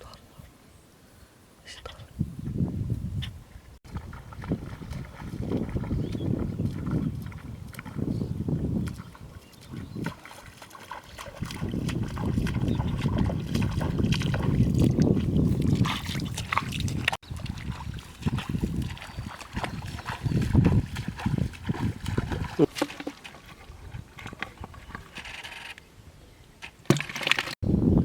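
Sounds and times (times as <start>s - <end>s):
shallow water splashing: 3.9s - 8.1s, 8.7s - 25.0s.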